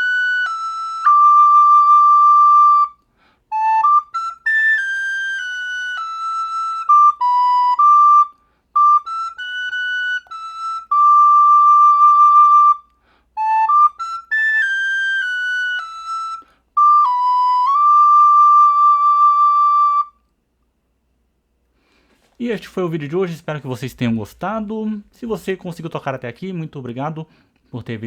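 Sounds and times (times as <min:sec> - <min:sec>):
recorder playing a melody: 0:00.0 - 0:20.2.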